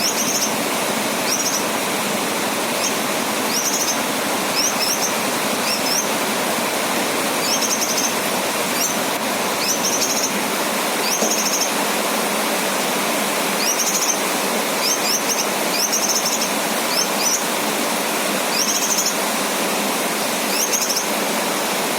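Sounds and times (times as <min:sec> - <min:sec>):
bird chirping trills: 0:00.0 - 0:00.6, 0:01.2 - 0:01.8, 0:02.7 - 0:06.2, 0:07.3 - 0:10.4, 0:11.0 - 0:11.8, 0:13.6 - 0:17.5, 0:18.5 - 0:19.2, 0:20.5 - 0:21.1
rain hissing: 0:00.0 - 0:21.9.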